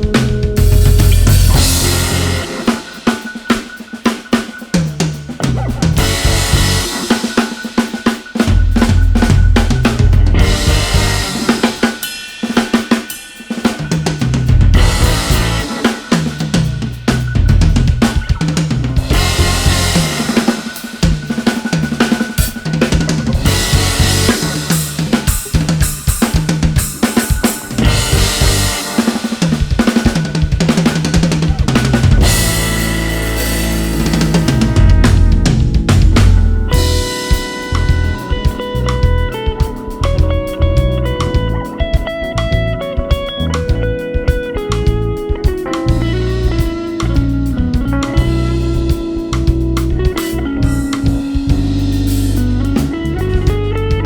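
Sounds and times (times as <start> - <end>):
drum kit playing fast: 0.0 - 54.0
pitched low line: 8.4 - 11.6.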